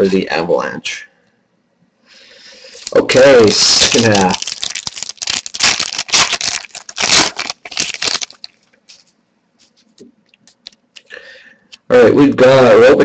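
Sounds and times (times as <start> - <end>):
wrapper and cards crinkling: 2.7 - 10.8.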